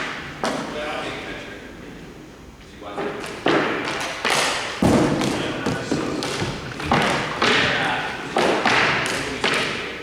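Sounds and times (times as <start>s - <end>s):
hockey hits and thuds: 3.4s - 9.9s.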